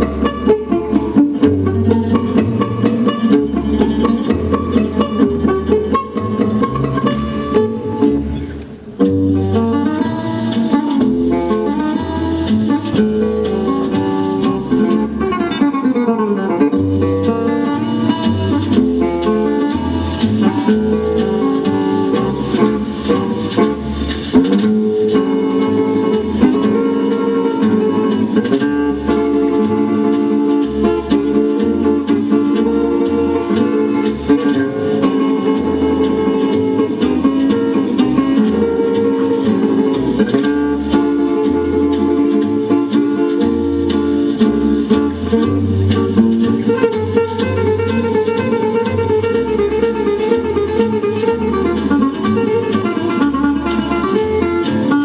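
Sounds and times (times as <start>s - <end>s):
repeating bass line: 0.0s - 15.3s
flamenco acoustic guitar music: 0.0s - 55.0s.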